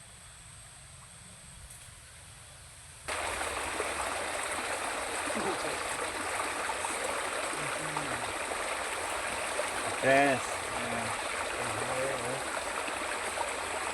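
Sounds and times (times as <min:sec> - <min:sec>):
stream water rushing: 0:03.1 - 0:13.9.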